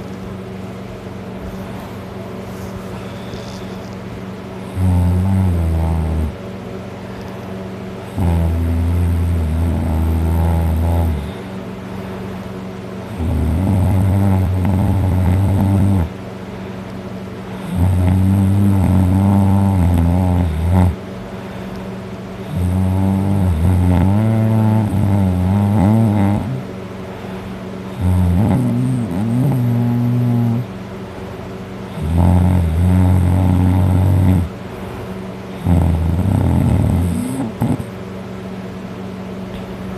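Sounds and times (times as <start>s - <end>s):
man snoring loudly: 4.6s - 6.4s, 8.1s - 11.5s, 13.1s - 16.1s, 17.6s - 21.0s, 22.4s - 26.6s, 28.0s - 30.7s, 31.9s - 34.5s, 35.6s - 37.9s.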